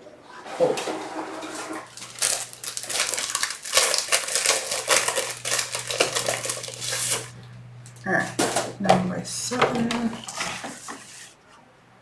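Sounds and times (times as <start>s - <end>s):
faint steady hum: 0.0s - 12.0s
stiff paper crinkling: 1.8s - 7.4s, 9.7s - 11.4s.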